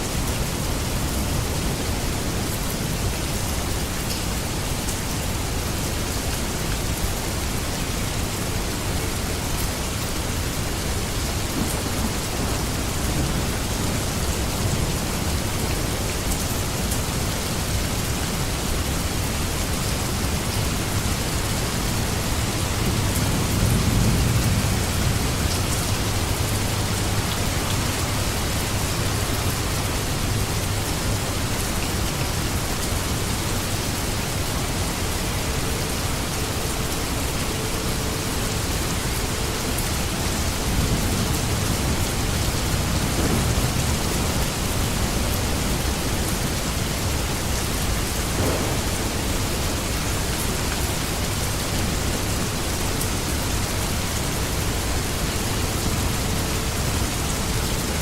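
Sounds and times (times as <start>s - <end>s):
steady rain falling: 0.0s - 58.0s
low rumble of thunder: 10.2s - 16.4s, 20.0s - 27.1s, 40.6s - 47.2s, 47.8s - 50.8s.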